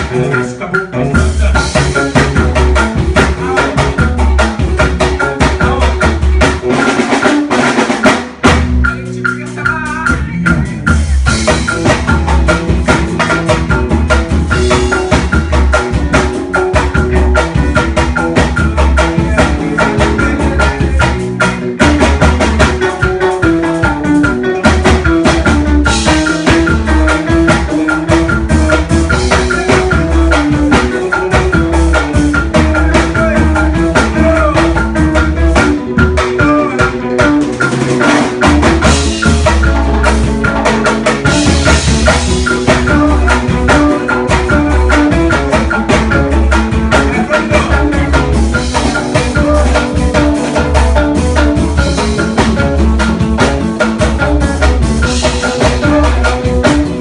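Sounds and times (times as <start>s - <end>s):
band music: 0.0s - 57.0s
driving drum beat: 0.0s - 57.0s
heavy bass: 0.0s - 57.0s
melody line: 8.7s - 57.0s.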